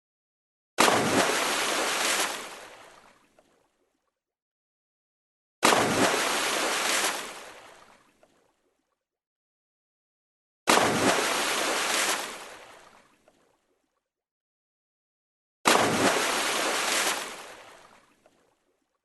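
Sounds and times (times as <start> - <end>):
water splash: 0.8 - 3.8, 5.6 - 8.5, 10.7 - 13.5, 15.7 - 18.7.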